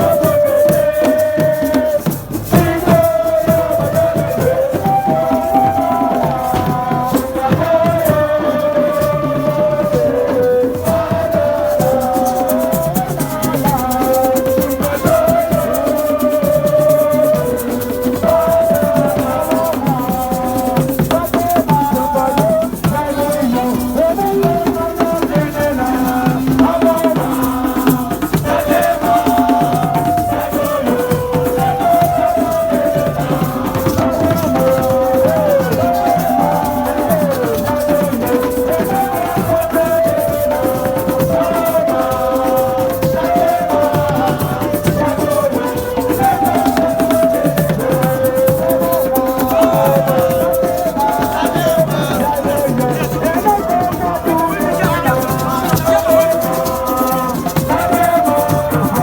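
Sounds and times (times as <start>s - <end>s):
shaken rattle: 0.0s - 59.0s
steady beat: 19.2s - 59.0s.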